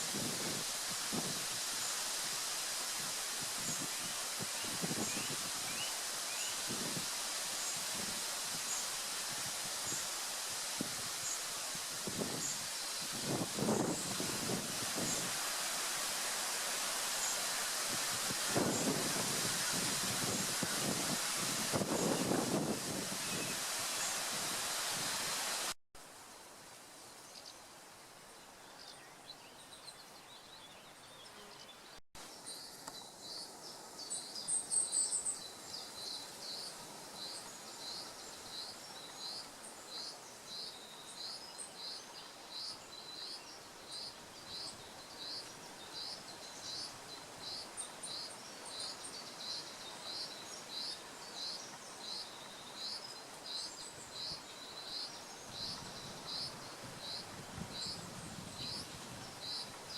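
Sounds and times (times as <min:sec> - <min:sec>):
stream water rushing: 0:00.0 - 0:25.8.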